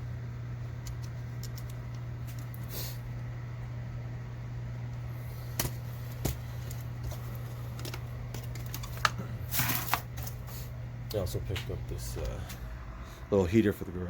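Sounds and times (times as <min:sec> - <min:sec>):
steady low hum: 0:00.0 - 0:14.0
packaging rustle: 0:06.6 - 0:10.5.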